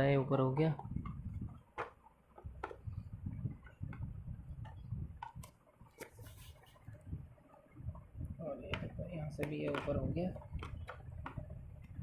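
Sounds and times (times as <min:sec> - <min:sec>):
plastic clicks and knocks: 0:00.8 - 0:03.0, 0:08.7 - 0:12.0.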